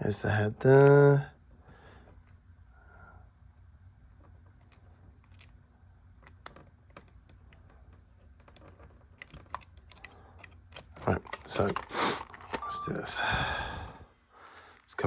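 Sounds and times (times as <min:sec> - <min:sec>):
low steady hum: 0:00.0 - 0:15.0
small clicks and taps of tools: 0:06.2 - 0:12.6.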